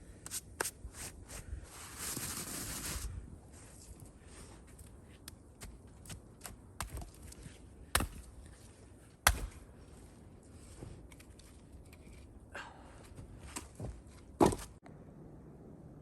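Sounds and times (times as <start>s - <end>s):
firewood cracking: 6.0s - 12.4s.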